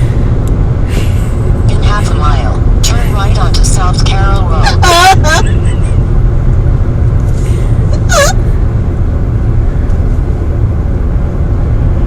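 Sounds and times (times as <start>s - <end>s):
steady low rumble: 0.0s - 12.0s
woman hiccuping: 8.0s - 8.4s.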